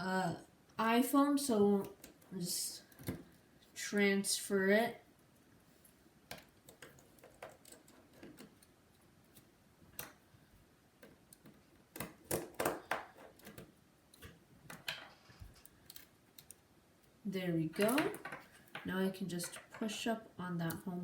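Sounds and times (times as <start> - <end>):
small tools clicking and tapping: 17.8 - 20.0.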